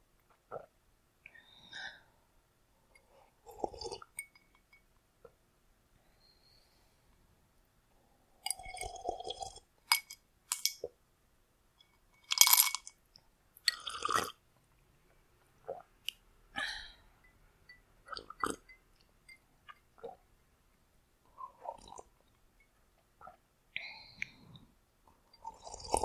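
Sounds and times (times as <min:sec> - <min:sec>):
person gulping water: 0:03.5 - 0:04.2, 0:13.7 - 0:14.4, 0:21.4 - 0:22.2.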